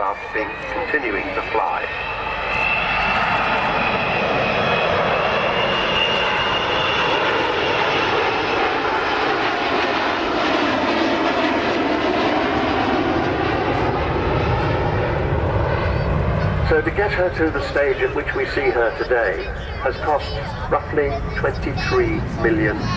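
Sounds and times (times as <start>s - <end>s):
high whine: 0.0s - 6.8s
loud jet engine noise: 0.0s - 22.9s.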